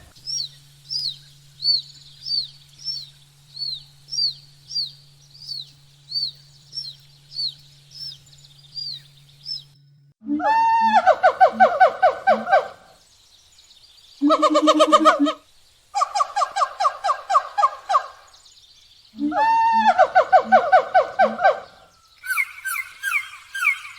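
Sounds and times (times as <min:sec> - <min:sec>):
loud pulsing bird calls: 0:00.0 - 0:09.8, 0:10.7 - 0:23.9
faint low hum: 0:00.0 - 0:23.9
short high bird chirps: 0:22.1 - 0:23.9.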